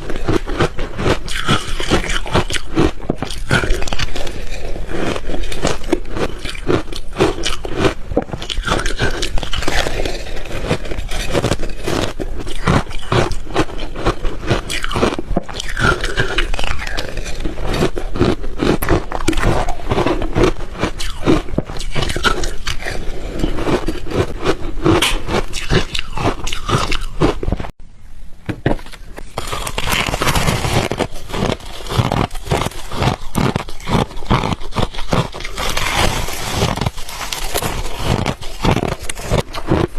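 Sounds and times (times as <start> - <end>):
chewing and crunching ice: 0.0 - 27.8, 29.2 - 39.9.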